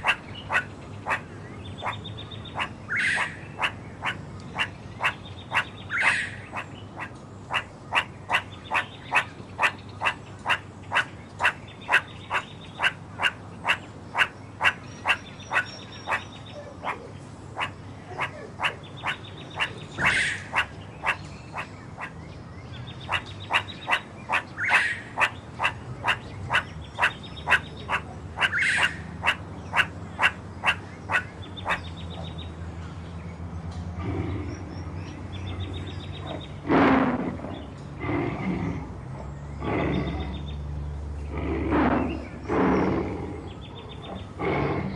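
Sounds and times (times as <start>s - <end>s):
frogs clicking calls: 0.0s - 17.0s, 17.6s - 22.2s, 22.9s - 32.0s.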